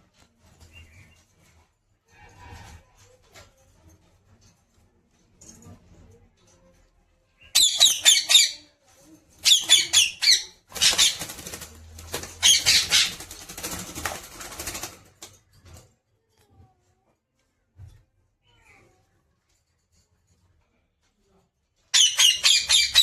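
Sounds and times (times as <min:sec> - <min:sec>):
parrot squawking harshly: 0:07.6 - 0:08.6, 0:12.4 - 0:13.2, 0:22.0 - 0:23.0
wings flapping: 0:10.7 - 0:15.8.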